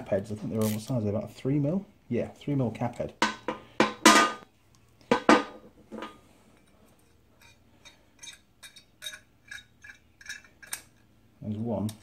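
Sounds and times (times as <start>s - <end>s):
sharp metal knocks: 3.2s - 4.5s
allen key clinking on bolts: 7.4s - 11.1s.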